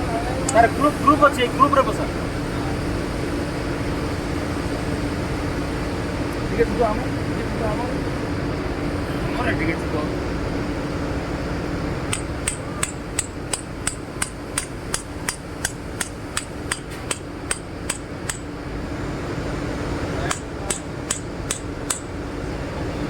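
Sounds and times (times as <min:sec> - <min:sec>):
hammer tapping on metal: 0:12.1 - 0:18.5, 0:20.3 - 0:22.1.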